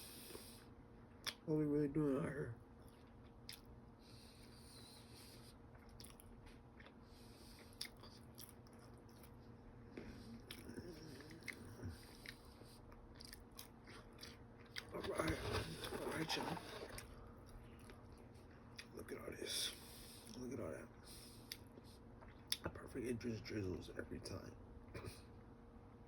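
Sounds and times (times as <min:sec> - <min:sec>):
person chewing with mouth clicks: 0:01.2 - 0:01.4, 0:02.8 - 0:03.7, 0:05.7 - 0:09.4, 0:10.0 - 0:16.0, 0:16.7 - 0:18.9, 0:21.4 - 0:22.6.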